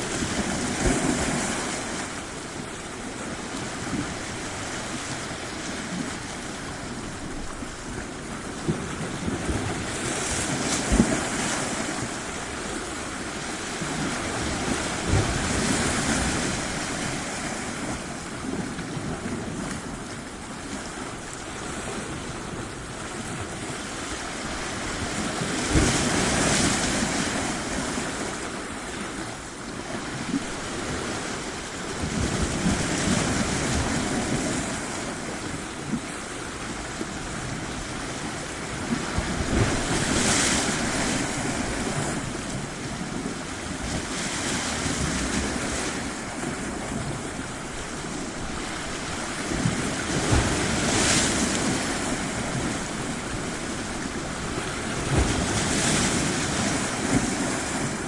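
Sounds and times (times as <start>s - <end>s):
sea waves breaking on shore: 0.0s - 58.0s.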